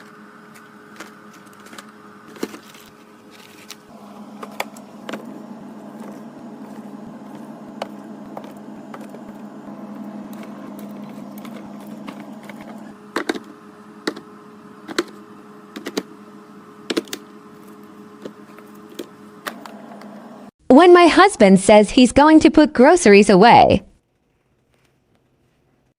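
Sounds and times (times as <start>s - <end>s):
items clicking and rattling: 0.0s - 5.3s
steady hum: 0.0s - 21.7s.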